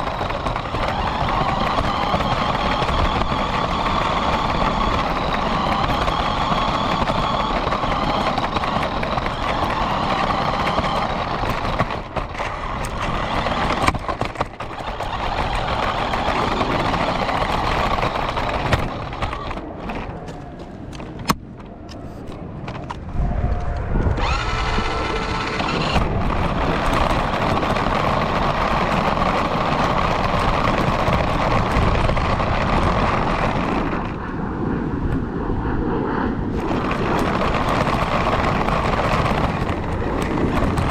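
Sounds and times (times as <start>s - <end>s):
rc car motor and wheels: 0.0s - 21.2s, 22.7s - 34.2s, 36.5s - 40.9s.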